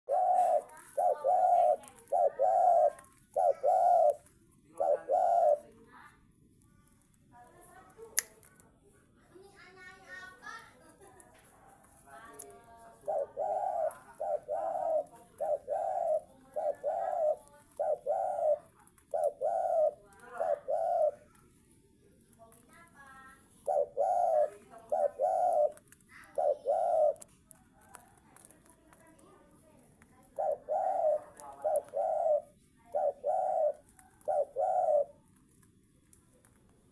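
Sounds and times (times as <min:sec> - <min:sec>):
dove cooing: 0:00.0 - 0:05.8, 0:12.2 - 0:21.4, 0:23.6 - 0:35.4.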